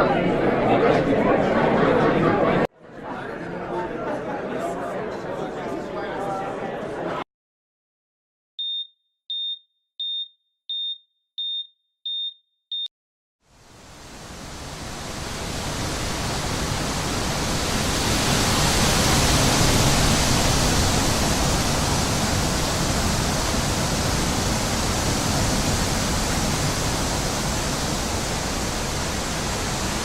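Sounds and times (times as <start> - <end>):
steady rushing noise: 13.6 - 30.0.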